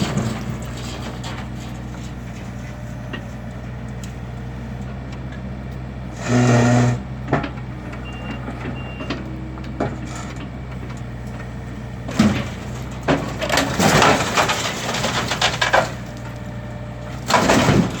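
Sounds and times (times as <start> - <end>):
wood debris cracking and crushing: 0.0 - 2.8, 12.0 - 18.0
heavy machinery engine hum: 0.0 - 18.0.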